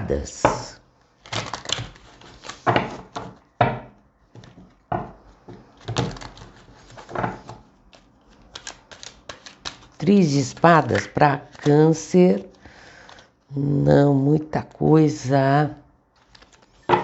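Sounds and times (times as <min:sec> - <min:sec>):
cards being shuffled: 0:01.2 - 0:03.5, 0:04.3 - 0:13.5, 0:16.1 - 0:17.0.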